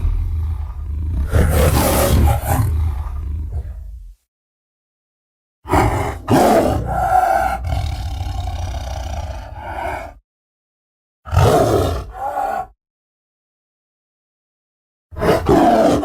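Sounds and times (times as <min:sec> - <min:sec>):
deep dinosaur calls: 0:00.0 - 0:04.2, 0:05.7 - 0:10.2.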